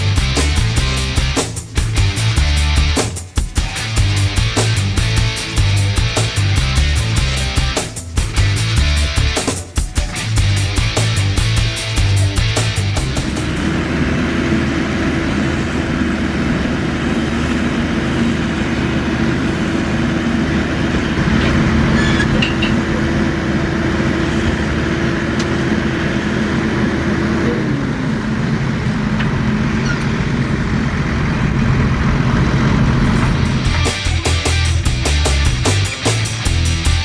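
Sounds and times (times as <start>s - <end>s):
diesel engine running under load: 3.6s - 9.4s, 10.1s - 37.0s.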